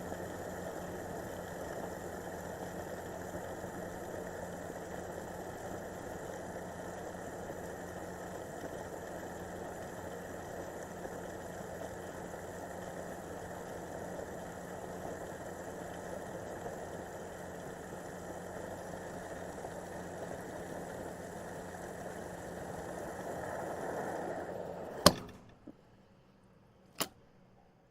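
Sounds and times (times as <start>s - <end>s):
fuel nozzle shutoff click: 27.0s - 27.2s.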